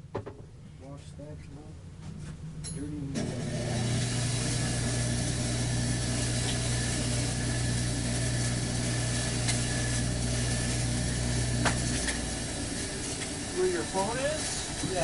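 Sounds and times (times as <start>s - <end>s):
motor humming: 2.9s - 15.0s.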